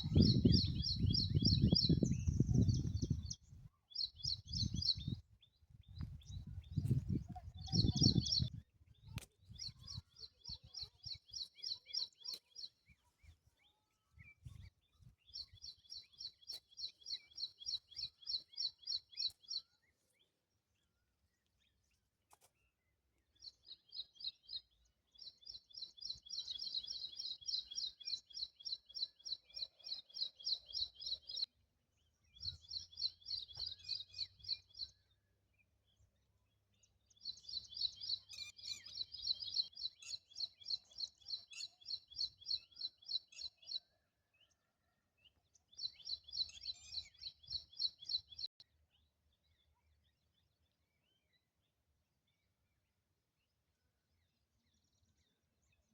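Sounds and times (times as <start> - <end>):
bird chirping trill: 0.0 - 5.2, 37.2 - 43.9.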